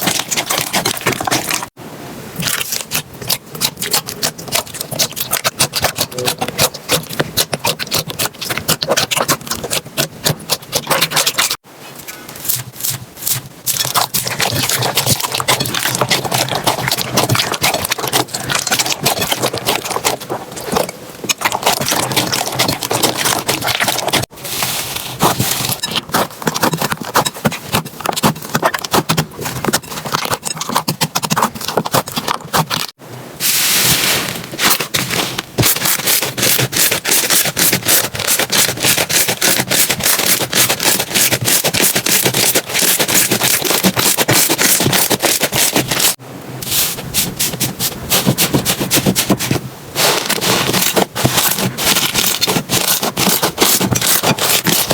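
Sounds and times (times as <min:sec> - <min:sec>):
slime crackling and popping: 0:02.4 - 0:11.6.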